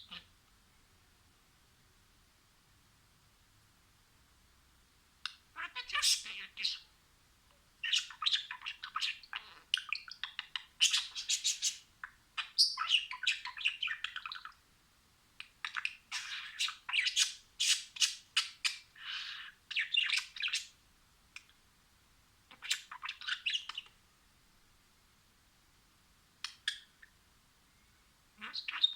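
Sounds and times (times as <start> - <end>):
budgerigars chirping and warbling: 5.3 - 6.9, 7.8 - 14.6, 15.4 - 20.8, 22.5 - 24.0, 28.4 - 28.9.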